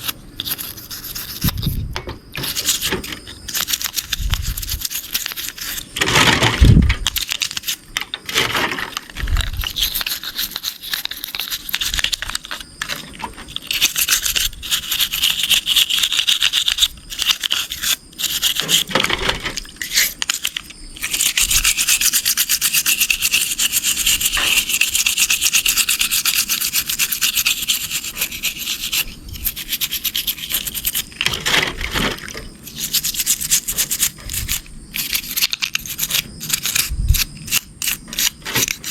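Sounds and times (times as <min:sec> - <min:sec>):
brush scrubbing: 0:00.0 - 0:01.8, 0:02.4 - 0:06.3, 0:08.9 - 0:38.9.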